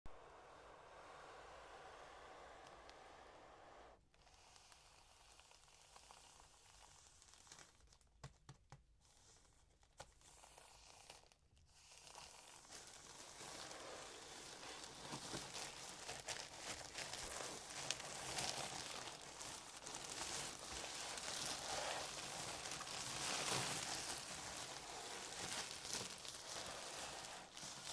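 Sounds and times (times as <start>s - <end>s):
wrapping crinkling and tearing: 4.3s - 8.2s, 9.2s - 27.9s
packaging clicks and taps: 8.0s - 8.9s.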